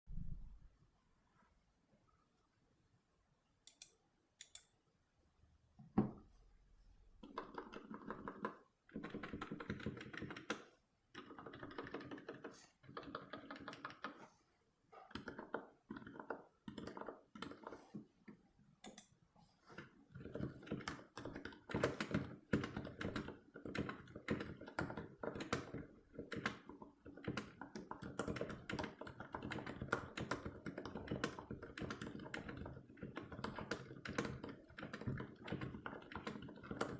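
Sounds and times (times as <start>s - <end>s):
typing on mechanical keyboard: 7.2s - 14.2s, 15.1s - 17.8s, 19.8s - 36.9s.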